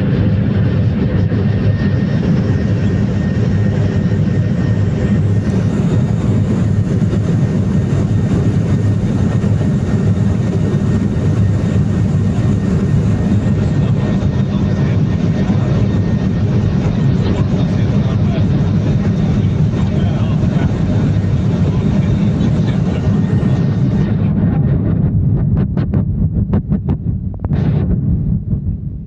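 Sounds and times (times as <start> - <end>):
airliner engines rumbling: 0.0 - 29.0
faint high whine: 1.7 - 24.2.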